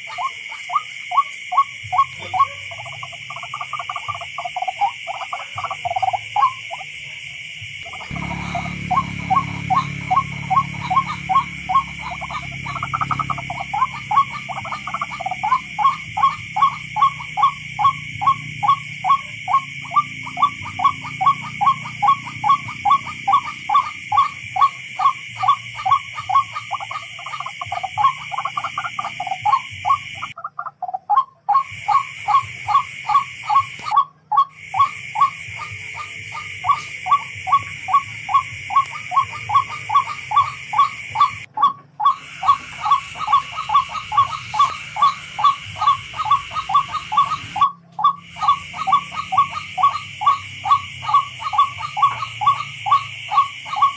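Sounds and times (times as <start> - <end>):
bird calling short repeated notes: 8.0 - 30.3.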